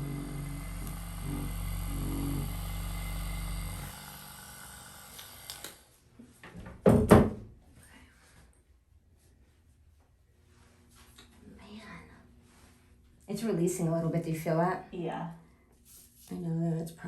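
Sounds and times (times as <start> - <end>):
small electric motor humming: 0.0 - 5.9.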